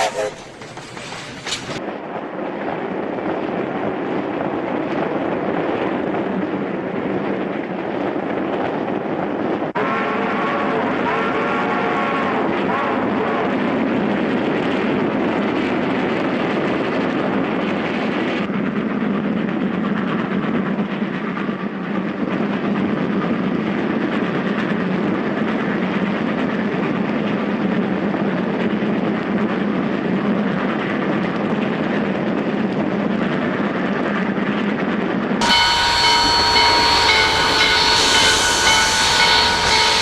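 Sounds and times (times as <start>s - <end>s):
train rumbling on rails: 0.0s - 2.2s, 35.4s - 40.0s.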